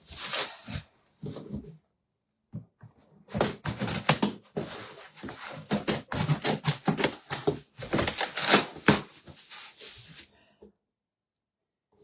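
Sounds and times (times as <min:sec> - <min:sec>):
packaging crackling and scraping: 0:03.4 - 0:09.9.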